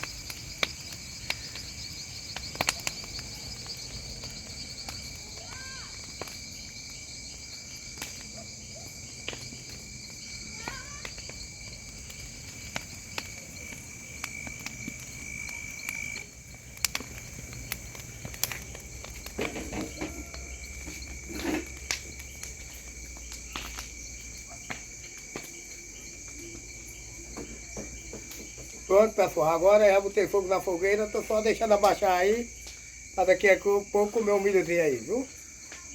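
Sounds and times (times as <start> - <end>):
bonfire crackling and popping: 0.0 - 35.9
crickets and insects chirping: 0.0 - 35.9.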